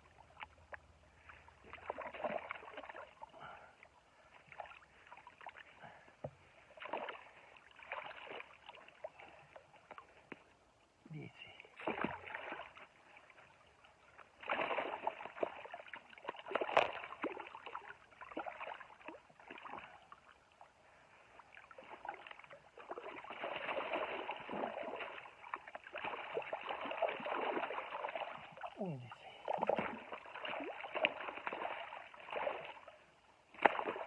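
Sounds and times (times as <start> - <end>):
water splashing and sloshing: 0.0 - 34.0.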